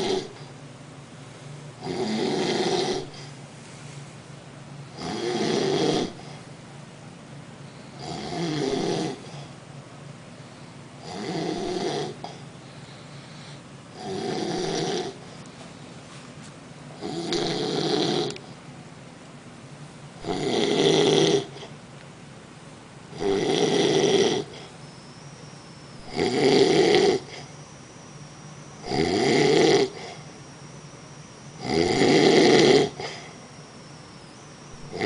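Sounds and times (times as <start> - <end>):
man snoring loudly: 0.0 - 0.4, 1.8 - 3.2, 5.0 - 6.3, 8.0 - 9.4, 11.0 - 12.3, 14.0 - 15.2, 17.0 - 18.4, 20.2 - 21.7, 23.2 - 24.7, 26.1 - 27.6, 28.8 - 30.3, 31.6 - 33.4
quiet breaths: 7.5 - 8.0, 10.3 - 11.0, 12.1 - 13.8.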